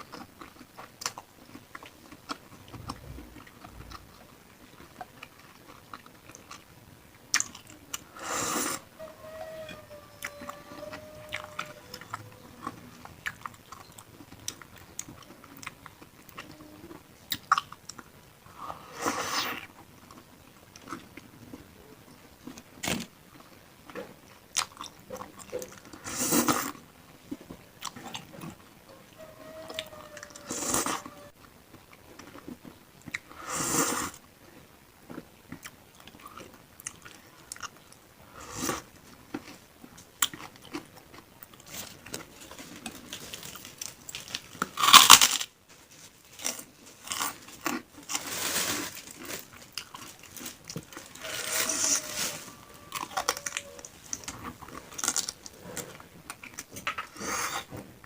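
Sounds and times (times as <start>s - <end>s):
chewing: 0.0s - 8.8s, 10.0s - 21.6s, 24.5s - 28.6s, 35.1s - 38.0s, 38.6s - 45.4s, 46.0s - 57.8s.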